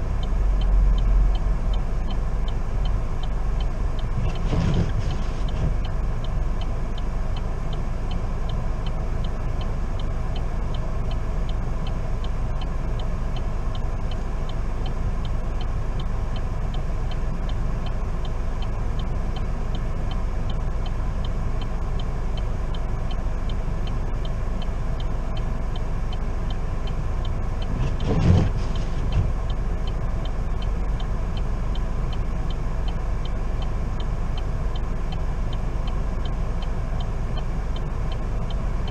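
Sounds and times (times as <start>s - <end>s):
faint regular ticking: 0.0s - 4.5s, 5.2s - 38.9s
car engine and road rumble: 0.0s - 38.9s
short thump: 27.8s - 29.3s.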